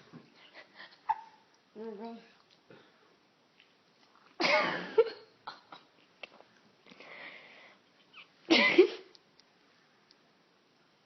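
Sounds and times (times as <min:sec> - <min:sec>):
soft breath: 0:06.9 - 0:08.0.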